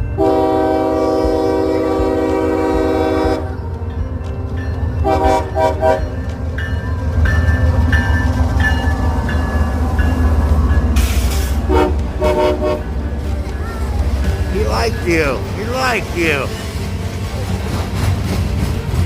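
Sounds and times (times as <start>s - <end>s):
train rumbling past: 0.0s - 19.0s
locomotive air horn: 0.2s - 3.4s, 11.7s - 12.9s.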